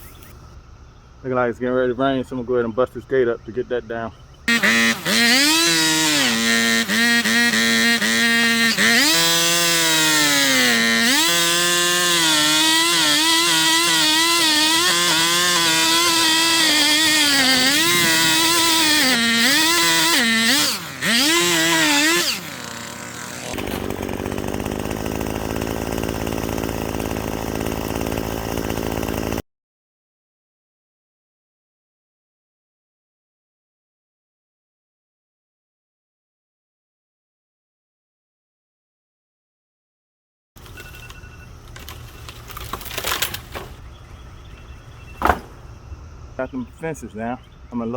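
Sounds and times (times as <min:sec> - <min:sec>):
power saw cutting: 0:04.5 - 0:29.4.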